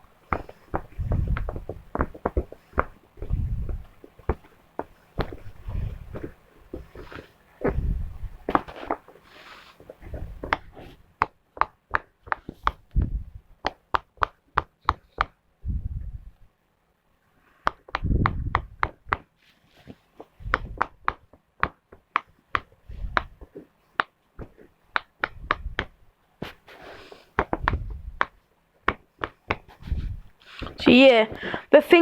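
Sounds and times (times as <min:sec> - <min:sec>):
dull low thumps: 0:00.8 - 0:02.0, 0:03.2 - 0:04.0, 0:07.6 - 0:08.5, 0:12.8 - 0:13.5, 0:15.6 - 0:16.4, 0:18.0 - 0:18.8, 0:20.4 - 0:21.0, 0:25.3 - 0:26.0, 0:27.5 - 0:28.2.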